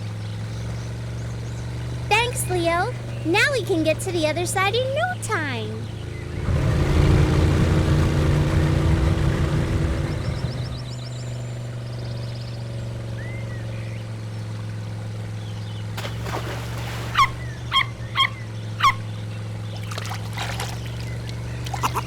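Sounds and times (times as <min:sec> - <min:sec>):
vehicle motor humming: 0:00.0 - 0:22.0
high chirping squeaks: 0:17.2 - 0:19.0
water trickling: 0:19.6 - 0:22.0.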